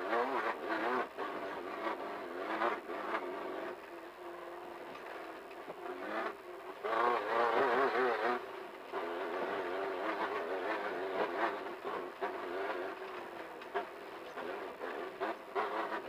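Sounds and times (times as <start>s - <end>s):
race car engine revving: 4.6s - 16.0s.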